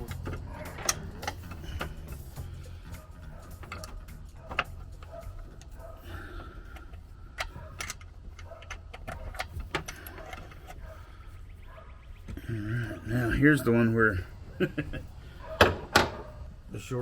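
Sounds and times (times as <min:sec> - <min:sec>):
hand tools clicking and clinking: 0:00.0 - 0:11.0.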